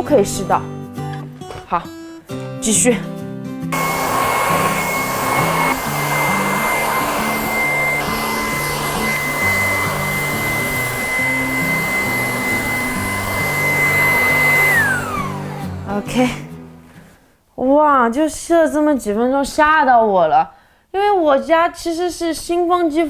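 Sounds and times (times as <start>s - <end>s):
cordless vacuum cleaner running: 3.8s - 16.5s.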